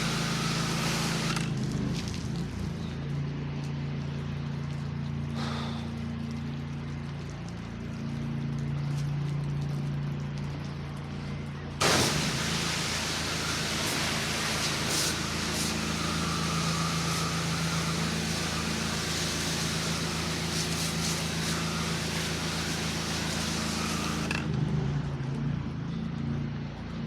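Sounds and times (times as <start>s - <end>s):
high-pressure water spraying: 0.0s - 2.8s, 11.8s - 24.6s
pressure washer engine running: 0.0s - 25.4s.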